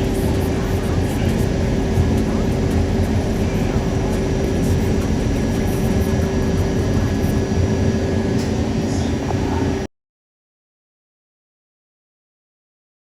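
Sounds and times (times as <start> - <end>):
train wheels rumbling on rails: 0.0 - 9.8
constant hum tone: 0.0 - 9.9.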